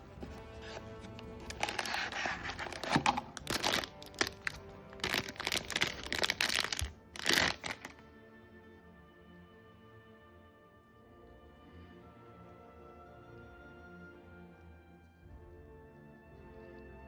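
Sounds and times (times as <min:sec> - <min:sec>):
background music: 0:00.0 - 0:17.0
packaging crinkling: 0:01.1 - 0:08.0.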